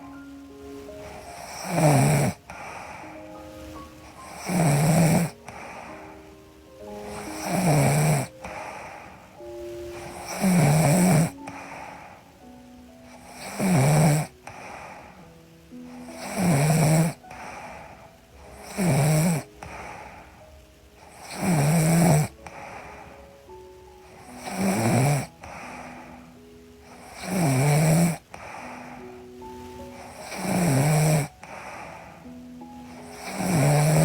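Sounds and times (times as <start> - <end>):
soft background music: 0.0 - 34.0
woman snoring: 1.0 - 6.1, 6.9 - 12.3, 13.1 - 15.2, 15.9 - 20.3, 21.0 - 23.1, 24.1 - 26.2, 26.9 - 29.2, 29.9 - 32.2, 32.9 - 34.0.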